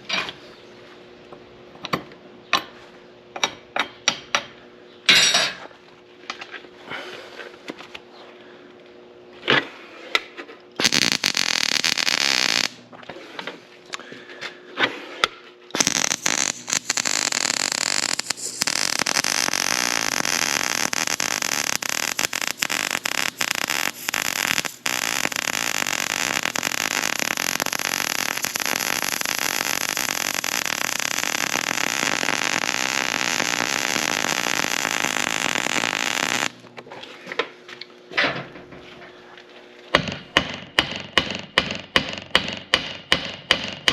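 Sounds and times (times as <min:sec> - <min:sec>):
arc welding crackling: 0:10.8 - 0:12.9, 0:15.7 - 0:36.7.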